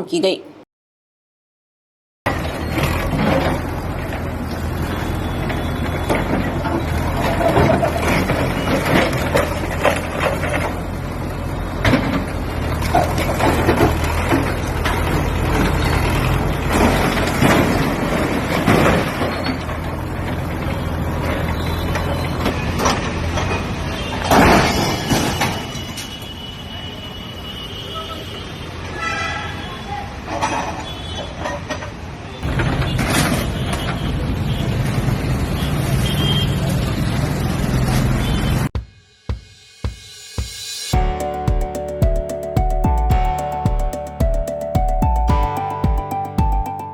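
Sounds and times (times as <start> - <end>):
bulldozer diesel engine running: 2.3 - 24.2.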